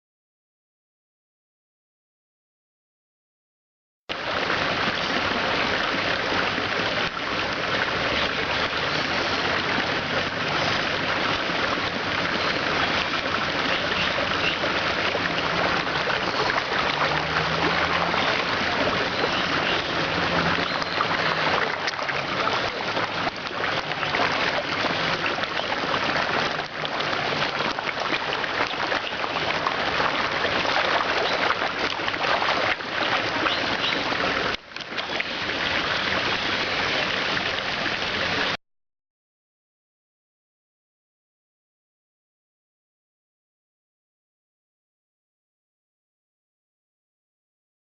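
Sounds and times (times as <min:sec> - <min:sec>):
water splashing from thrashing fish: 0:11.5 - 0:38.0.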